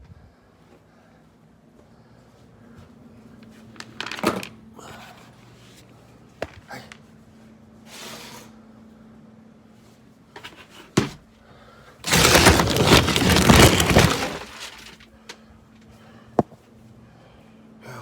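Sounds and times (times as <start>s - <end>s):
clatter of hard objects: 3.8s - 4.6s, 12.0s - 15.0s.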